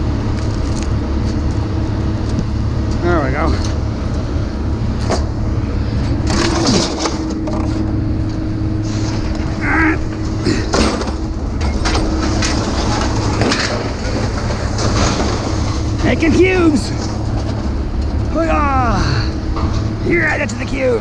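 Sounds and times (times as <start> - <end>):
machinery engine idling: 0.0 - 21.0
metal scrap clanking: 6.1 - 7.9, 8.8 - 18.2.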